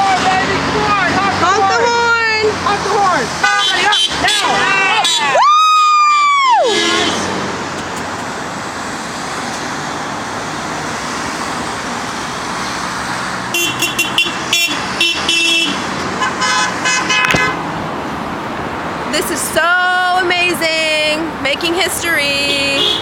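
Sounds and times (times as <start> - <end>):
street traffic: 0.0 - 23.0
car horn honking: 3.4 - 5.4, 6.6 - 7.3, 13.5 - 17.7, 22.2 - 23.0.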